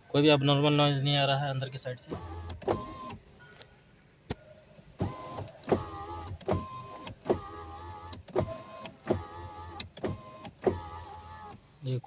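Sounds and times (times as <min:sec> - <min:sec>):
power window motor: 0:02.0 - 0:03.3, 0:05.0 - 0:11.6.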